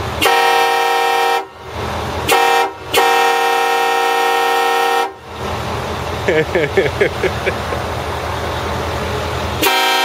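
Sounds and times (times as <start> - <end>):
train horn blasts: 0.2 - 1.6, 2.3 - 5.2, 9.6 - 10.0.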